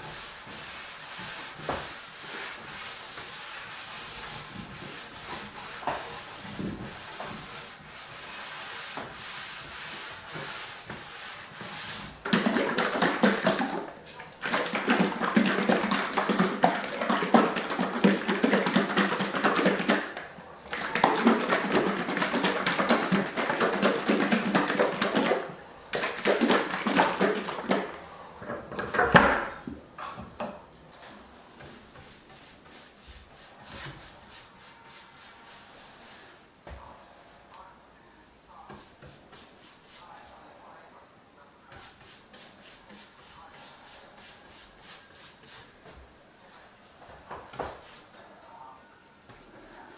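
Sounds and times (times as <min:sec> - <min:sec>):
sandpaper rubbing on wood: 0:41.8 - 0:45.7.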